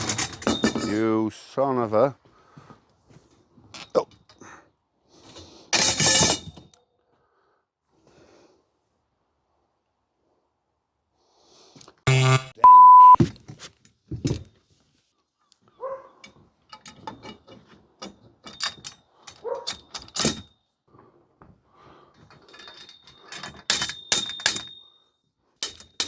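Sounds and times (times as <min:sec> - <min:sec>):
metal tubes knocking and rattling: 0:00.0 - 0:01.1, 0:16.2 - 0:20.5, 0:22.2 - 0:24.8, 0:25.6 - 0:26.0
censor bleep: 0:12.1 - 0:13.2.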